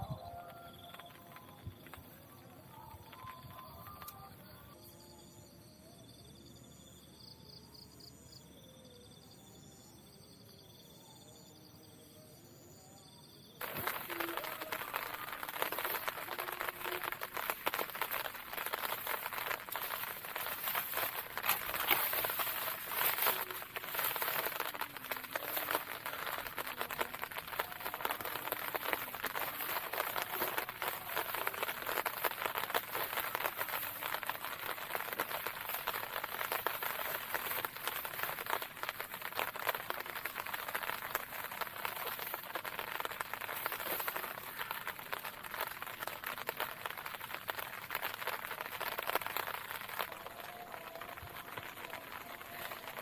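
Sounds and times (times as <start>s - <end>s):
steady rain falling: 13.6s - 53.0s.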